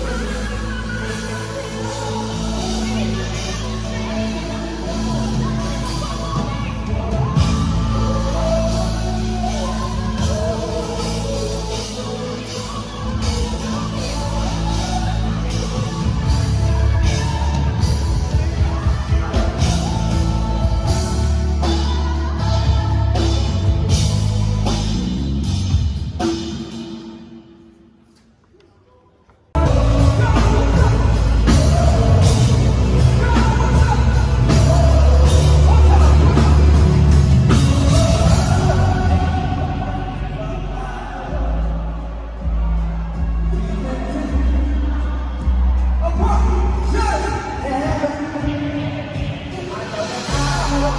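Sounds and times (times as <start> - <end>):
held bass notes: 0.0 - 26.2, 29.6 - 48.0
person singing: 0.0 - 27.2, 29.6 - 50.9
cymbals washing: 29.6 - 40.8.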